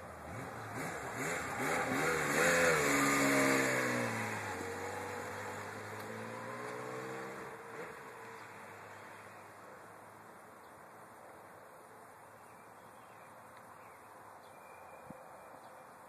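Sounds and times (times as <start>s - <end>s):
motorcycle engine revving: 0.0s - 9.1s.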